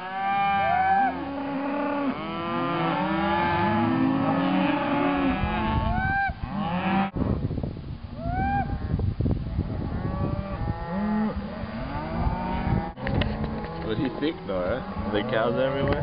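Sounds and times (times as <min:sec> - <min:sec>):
cattle mooing: 0:00.0 - 0:07.1, 0:10.0 - 0:16.0.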